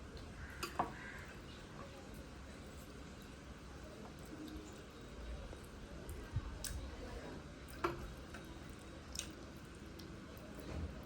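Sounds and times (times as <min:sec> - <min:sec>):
chewing with wet clicks: 0:05.5 - 0:06.9, 0:07.6 - 0:10.7.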